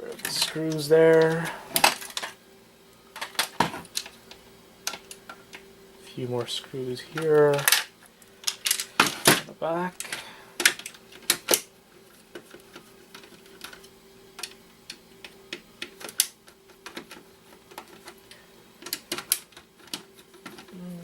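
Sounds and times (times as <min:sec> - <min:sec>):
screws and plastic parts clattering: 0:00.0 - 0:02.4, 0:07.1 - 0:09.4, 0:10.0 - 0:11.6, 0:12.3 - 0:14.6, 0:15.8 - 0:20.8.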